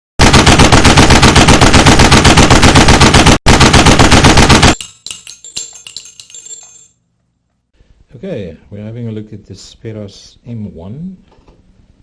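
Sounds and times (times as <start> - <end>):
automatic gunfire: 0.2 - 4.8
faint metallic clinks and ringing: 4.8 - 7.0.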